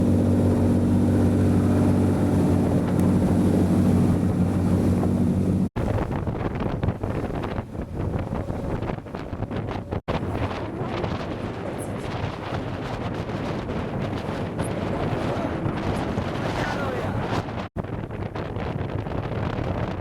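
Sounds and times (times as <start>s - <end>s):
loud engine drone: 0.0s - 5.7s
wind buffeting microphone: 0.0s - 20.0s.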